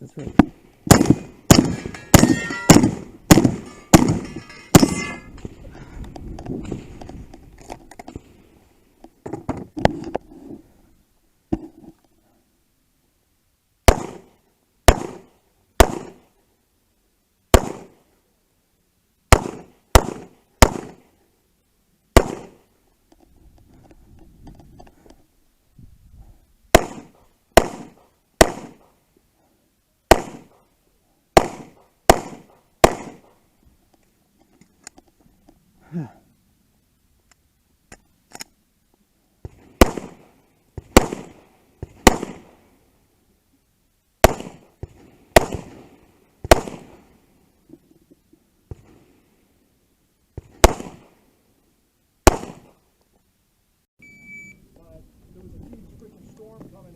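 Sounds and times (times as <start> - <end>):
gunshots: 0.3 - 5.5, 13.9 - 14.3, 14.9 - 16.2, 17.5 - 18.0, 19.3 - 21.0, 22.2 - 22.6, 26.7 - 28.9, 30.1 - 30.6, 31.4 - 33.3, 39.5 - 42.6, 44.2 - 44.7, 45.4 - 47.1, 50.4 - 51.1, 52.2 - 52.8.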